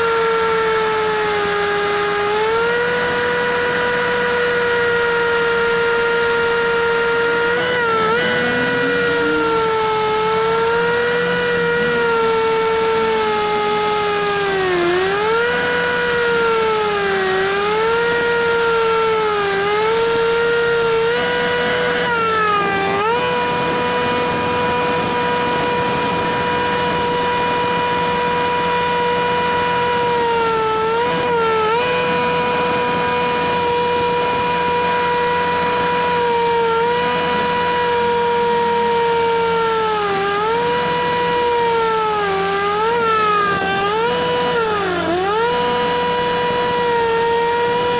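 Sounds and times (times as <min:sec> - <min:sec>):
power tool motor whining: 0:00.0 - 0:47.9.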